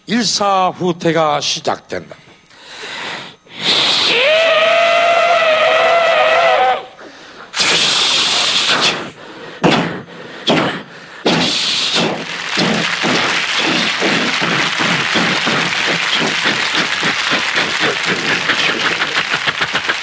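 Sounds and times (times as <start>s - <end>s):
person imitating siren wail: 4.0s - 7.0s
mouth-made blasts and cracks: 10.5s - 20.0s
mouth-made rushing noise: 11.3s - 20.0s.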